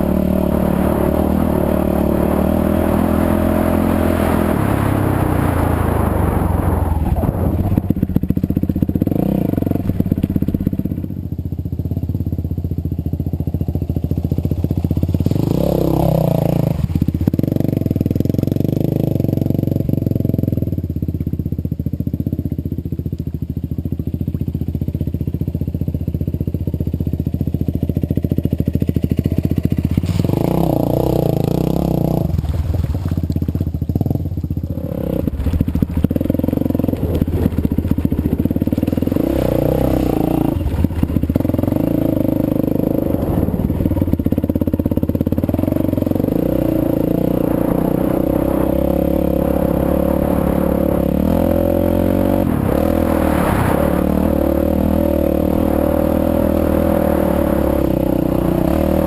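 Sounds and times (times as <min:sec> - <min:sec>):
motorcycle engine idling: 0:09.7 - 0:15.3, 0:19.6 - 0:30.2, 0:32.9 - 0:46.6.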